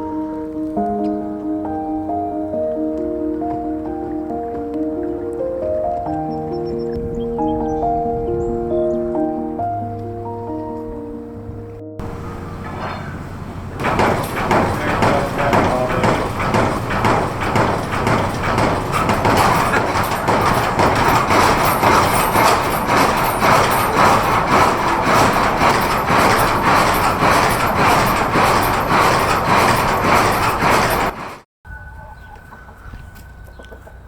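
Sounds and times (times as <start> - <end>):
rolling rumble: 2.0 - 32.0
horse hooves clip-clopping: 12.0 - 31.4, 32.2 - 34.0.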